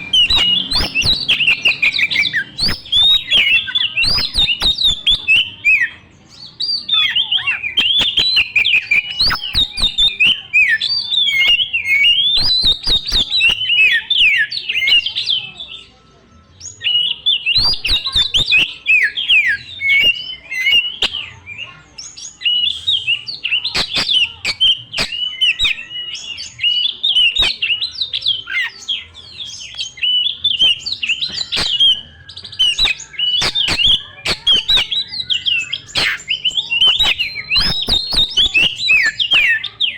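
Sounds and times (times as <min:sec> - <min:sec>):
songbird whistling and chirping: 0:00.0 - 0:39.9.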